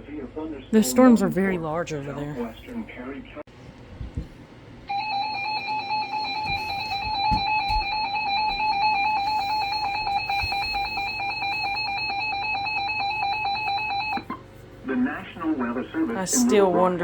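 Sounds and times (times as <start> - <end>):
weather warning broadcast: 0.7 - 3.4.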